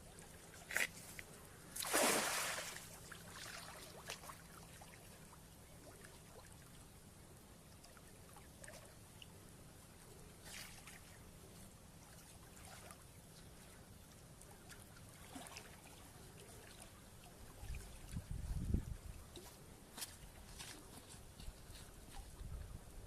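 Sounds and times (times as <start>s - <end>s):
water splashing: 1.8s - 4.5s.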